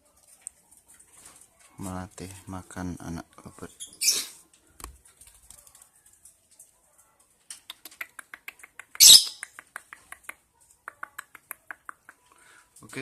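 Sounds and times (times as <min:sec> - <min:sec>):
loud harsh bird squawk: 0:03.9 - 0:04.4, 0:09.0 - 0:09.4.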